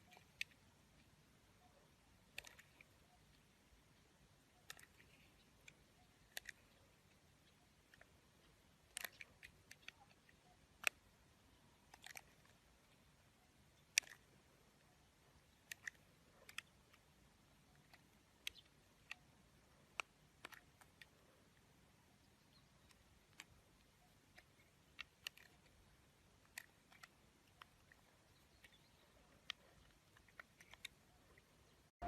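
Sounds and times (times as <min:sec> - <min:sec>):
faint crisp clicks and crackles: 0:00.0 - 0:32.0.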